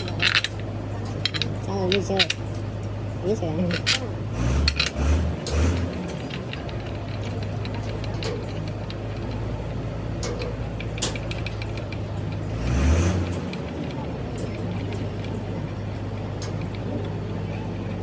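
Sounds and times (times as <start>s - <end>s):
motor humming: 0.0s - 18.0s.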